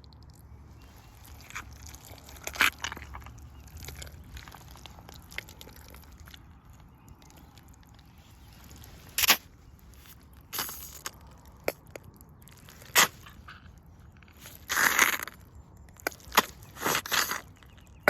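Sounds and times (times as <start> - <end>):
rubber boots squelching in mud: 0.8 - 18.0.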